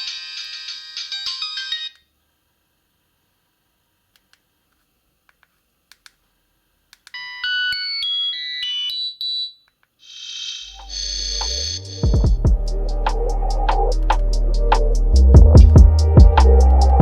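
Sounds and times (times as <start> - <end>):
buzzy phone ringtone: 0.0 - 2.0, 10.1 - 13.9
beeping phone ringtone: 10.1 - 12.4.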